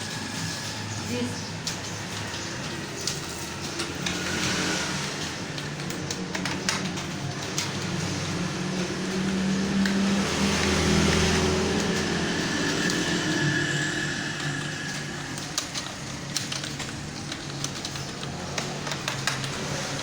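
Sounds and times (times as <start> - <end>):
vehicle engine humming: 1.5 - 20.0
keyboard keys clicking: 5.4 - 13.0, 15.4 - 20.0.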